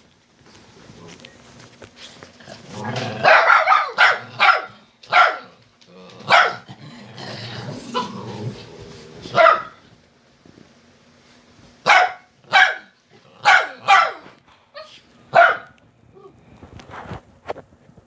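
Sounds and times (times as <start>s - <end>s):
dog barking: 3.2s - 5.6s, 6.2s - 6.7s, 9.3s - 9.8s, 11.8s - 15.8s.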